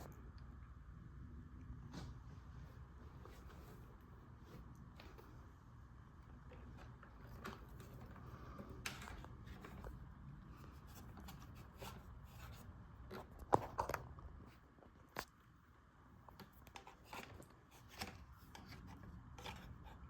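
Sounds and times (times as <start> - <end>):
faint clicks and taps: 16.2 - 20.0.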